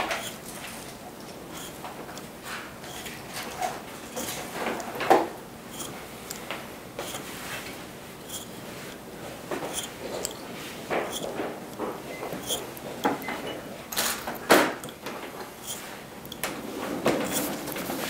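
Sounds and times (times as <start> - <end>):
blade scratching skin: 0.0 - 0.6, 1.5 - 1.8, 2.8 - 5.0, 5.7 - 7.5, 8.2 - 9.0, 9.6 - 11.4, 12.3 - 13.3, 14.9 - 16.4, 17.2 - 18.0.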